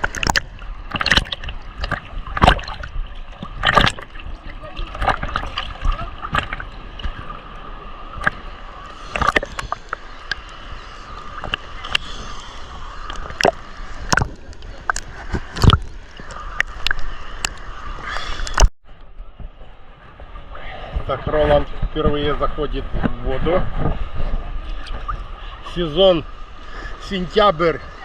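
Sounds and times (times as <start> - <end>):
small waves splashing: 0.0 - 18.7.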